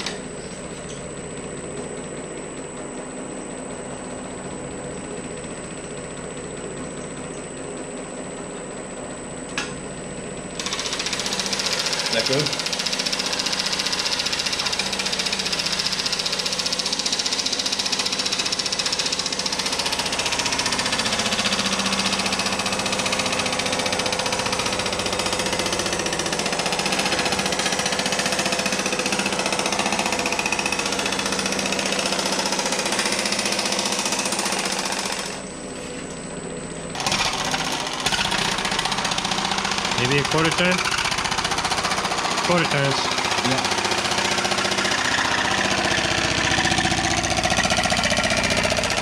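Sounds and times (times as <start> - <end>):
sheet-metal machine hammering: 10.6 - 35.4, 37.0 - 49.0.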